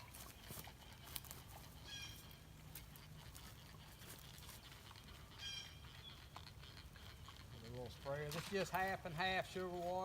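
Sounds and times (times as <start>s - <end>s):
high animal call: 1.8s - 2.4s, 5.2s - 7.6s.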